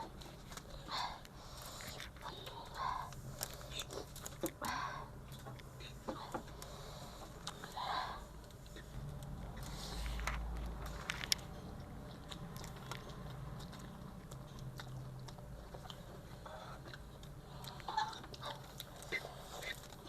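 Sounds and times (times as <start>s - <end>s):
chewing noodles: 0.0s - 20.0s
small crunchy clicks: 8.4s - 11.5s.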